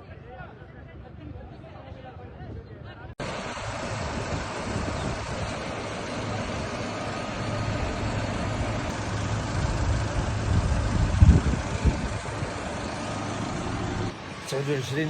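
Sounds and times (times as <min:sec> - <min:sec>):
vehicle engine running: 0:03.2 - 0:15.0.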